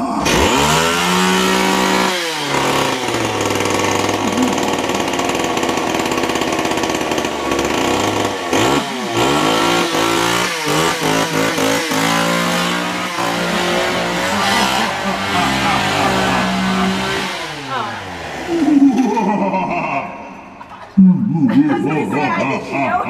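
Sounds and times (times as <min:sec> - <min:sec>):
chainsaw engine revving: 0:00.0 - 0:20.7.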